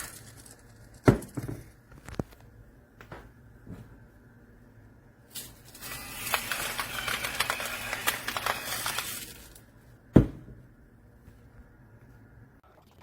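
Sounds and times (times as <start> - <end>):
electric grinder crunching rattle: 5.7 - 9.6.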